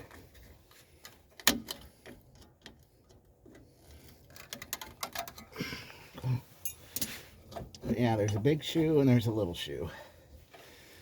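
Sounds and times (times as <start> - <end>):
clicks of metal hardware and tools: 4.3 - 5.5.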